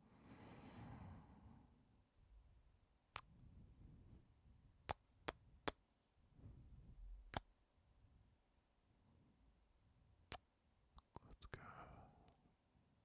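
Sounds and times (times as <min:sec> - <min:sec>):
soft slow breathing: 0:00.0 - 0:01.8.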